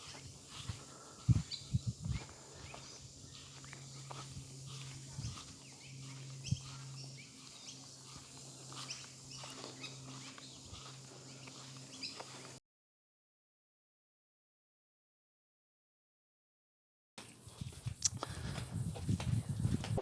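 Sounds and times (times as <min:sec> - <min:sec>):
low steady hum: 0:00.0 - 0:12.6
faint bird chirps: 0:01.4 - 0:12.6.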